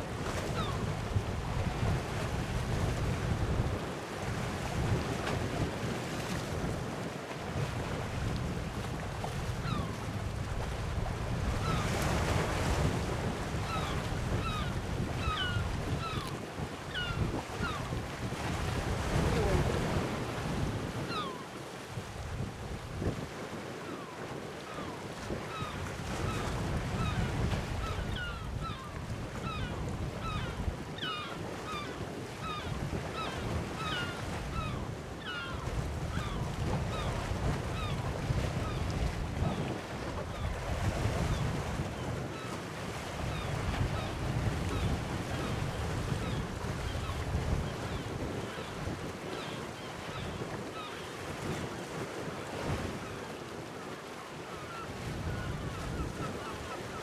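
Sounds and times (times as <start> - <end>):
sea waves: 0.0 - 22.3
wind gusting on microphone: 7.6 - 21.2, 35.6 - 42.3, 43.0 - 49.1.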